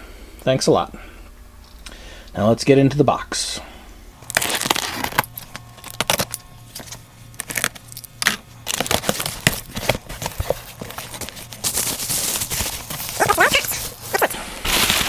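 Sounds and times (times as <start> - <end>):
cardboard box being opened: 4.2 - 15.0
packing material rustling: 4.2 - 15.0.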